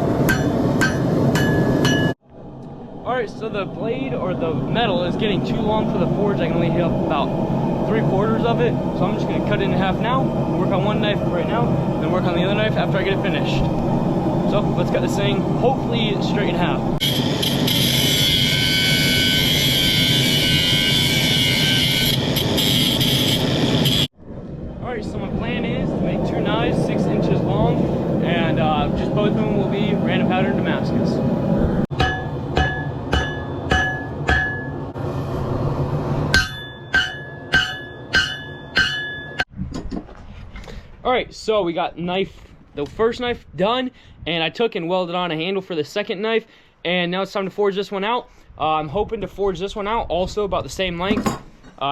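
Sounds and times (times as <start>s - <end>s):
hammer ringing on steel: 0.3s - 2.2s, 31.9s - 34.8s, 36.3s - 39.5s.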